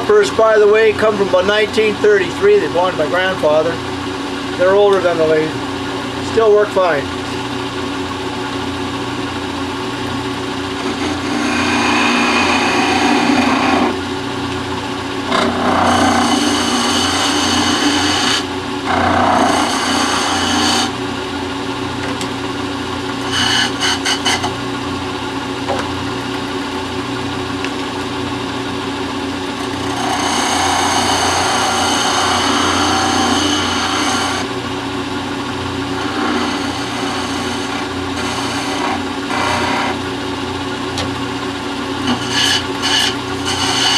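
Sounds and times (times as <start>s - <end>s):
lathe motor humming: 0.0s - 43.9s
chisel rasping on spinning wood: 10.7s - 14.1s, 15.2s - 21.0s, 23.2s - 24.6s, 29.5s - 34.5s, 35.8s - 40.1s, 42.0s - 43.9s.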